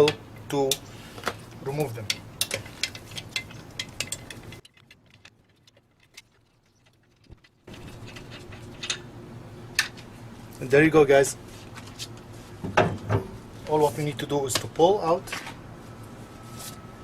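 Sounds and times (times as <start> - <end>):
lug nuts clicking and clinking: 0.0 - 6.2, 7.7 - 9.1.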